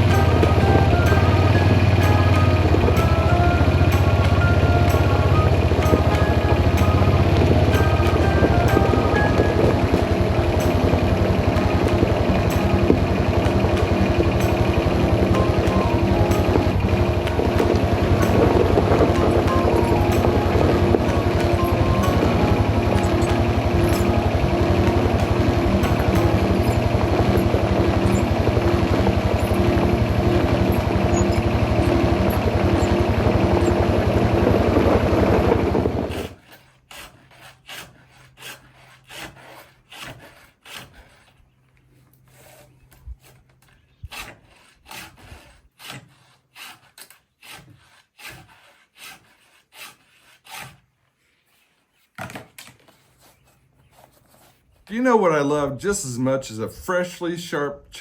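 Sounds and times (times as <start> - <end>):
engine running loud: 0.0 - 36.4
file rasping on chainsaw chain: 36.1 - 41.4, 44.0 - 50.9.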